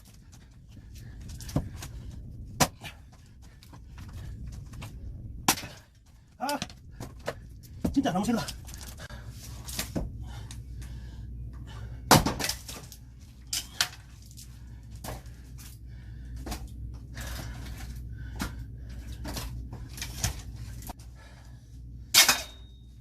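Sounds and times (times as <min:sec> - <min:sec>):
axe chopping log: 0:02.6 - 0:02.9, 0:12.1 - 0:12.8.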